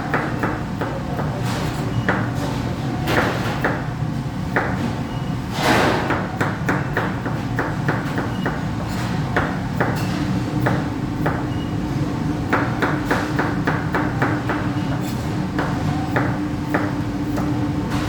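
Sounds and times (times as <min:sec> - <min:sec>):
knife chopping on cutting board: 0:05.6 - 0:11.4, 0:12.5 - 0:18.0.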